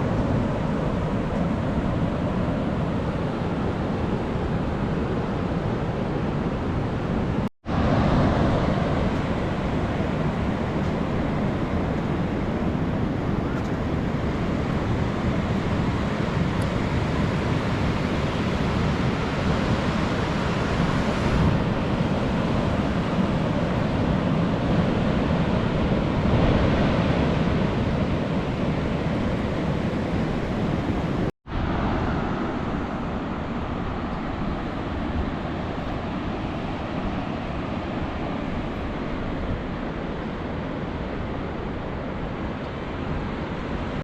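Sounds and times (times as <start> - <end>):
ocean waves washing: 0.0 - 44.0
wind buffeting microphone: 0.0 - 44.0.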